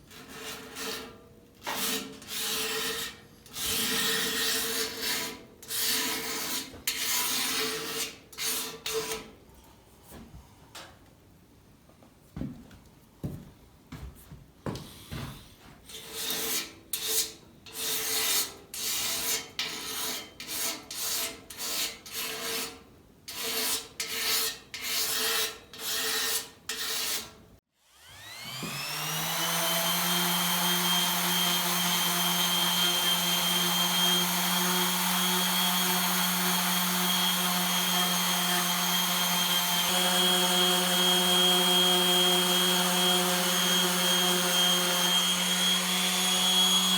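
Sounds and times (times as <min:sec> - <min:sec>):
electric motor whining: 0:27.9 - 0:35.1.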